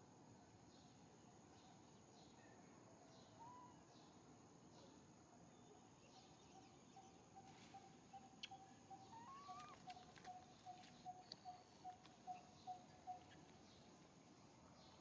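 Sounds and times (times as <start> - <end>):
faint bird call: 3.2 - 4.0, 7.0 - 13.4.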